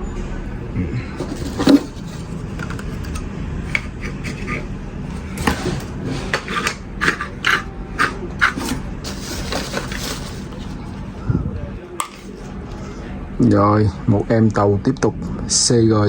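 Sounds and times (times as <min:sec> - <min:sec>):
steady low hum: 0:00.0 - 0:16.0
scraping rustling strokes: 0:03.8 - 0:11.1.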